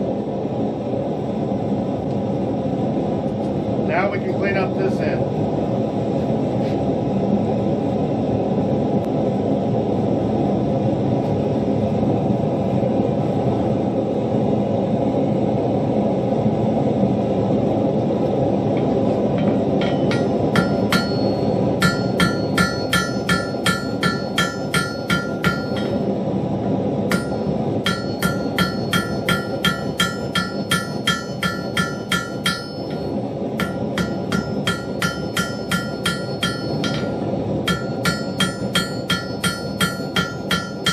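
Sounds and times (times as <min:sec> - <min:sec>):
steady rushing noise: 0:00.0 - 0:40.9
hammer striking steel on anvil: 0:19.4 - 0:26.0, 0:27.1 - 0:40.9.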